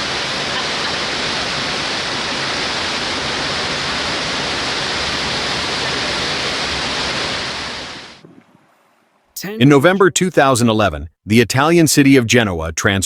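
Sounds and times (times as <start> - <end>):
flood water rushing: 0.0 - 8.2.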